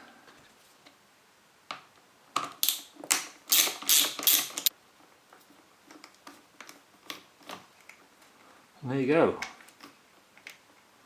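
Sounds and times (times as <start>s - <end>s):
screwdriver clicking: 2.6s - 4.7s.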